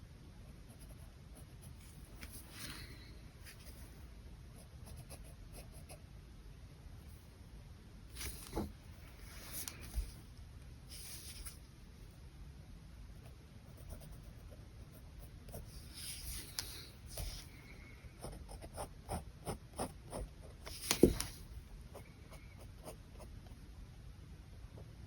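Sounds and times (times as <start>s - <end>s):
pen scratching on paper: 18.2s - 21.3s.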